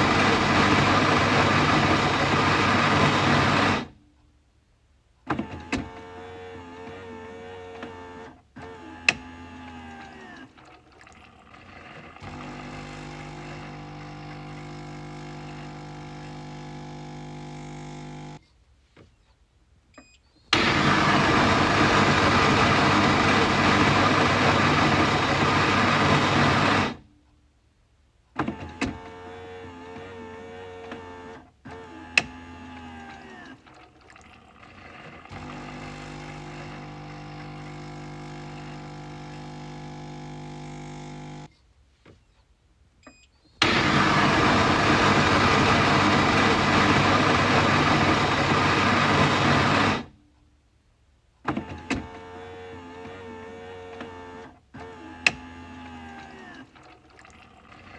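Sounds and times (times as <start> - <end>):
coffee machine motor hum: 0.0 - 4.0, 11.2 - 18.4, 20.6 - 27.0, 34.6 - 41.5, 43.6 - 50.1.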